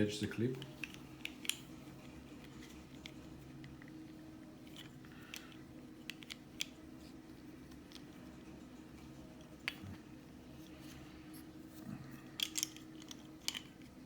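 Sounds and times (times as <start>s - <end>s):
low steady hum: 0.0s - 14.0s
plastic clip clicks and scrapes: 12.4s - 13.9s.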